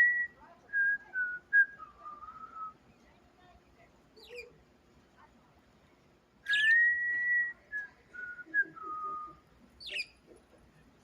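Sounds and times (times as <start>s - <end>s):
budgerigar chirp: 6.5s - 6.8s, 9.8s - 10.2s.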